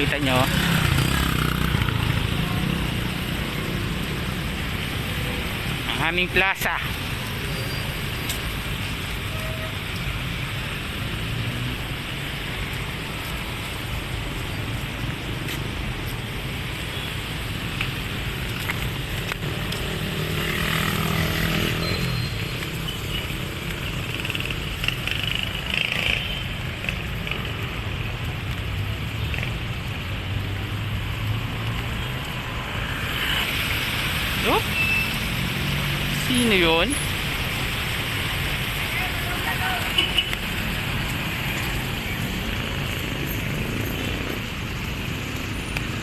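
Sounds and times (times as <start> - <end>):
passing traffic: 0.0 - 46.0
engine passing close by: 0.3 - 3.5, 19.9 - 22.2.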